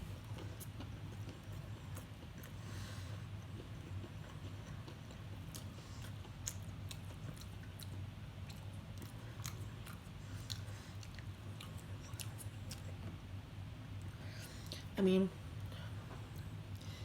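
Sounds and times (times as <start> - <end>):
steady low hum: 0.0 - 17.0
person chewing food: 0.1 - 13.2.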